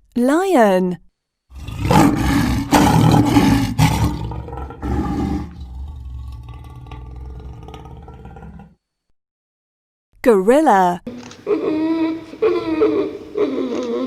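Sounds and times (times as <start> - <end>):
lion roaring: 1.5 - 8.8.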